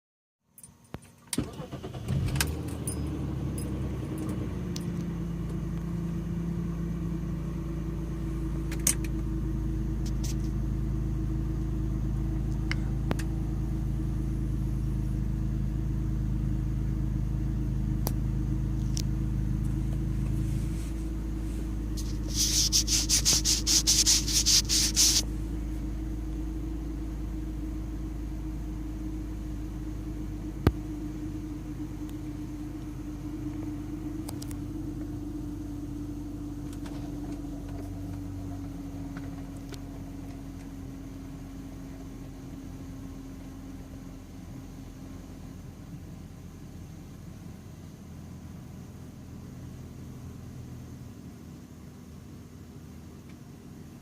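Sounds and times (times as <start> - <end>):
car engine idling: 0.8 - 54.0
car engine cranking: 1.0 - 5.9, 8.5 - 10.6, 17.9 - 26.8
rapid high rattling: 22.0 - 25.3.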